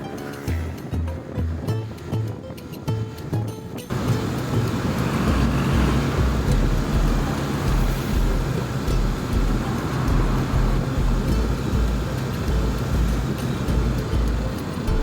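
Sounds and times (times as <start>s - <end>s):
wind buffeting microphone: 0.0s - 15.0s
scooter engine running: 3.9s - 15.0s.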